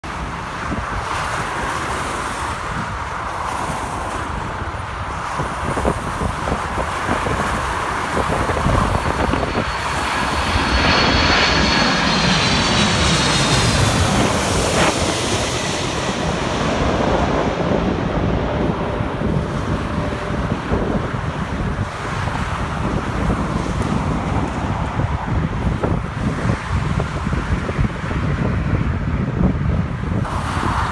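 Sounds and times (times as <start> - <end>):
jet airliner passing overhead: 0.1 - 30.9
high turbine whine: 5.4 - 28.0.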